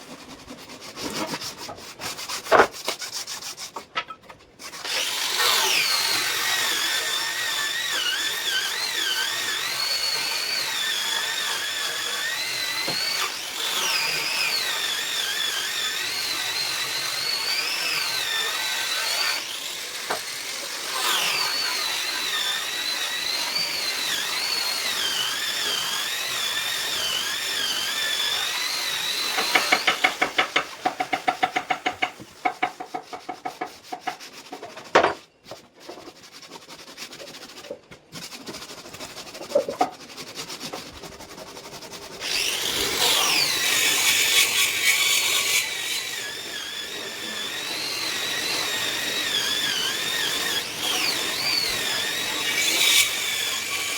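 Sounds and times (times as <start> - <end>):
power tool motor whining: 42.2 - 53.9.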